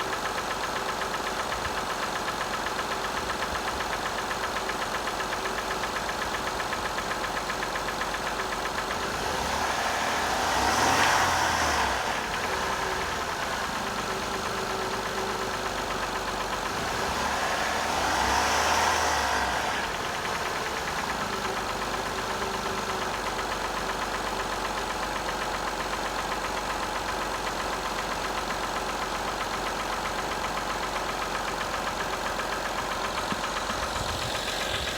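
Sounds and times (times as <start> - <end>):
car engine idling with knocking: 0.0 - 34.9
car engine revving: 9.0 - 15.4, 16.5 - 21.8, 32.5 - 34.9.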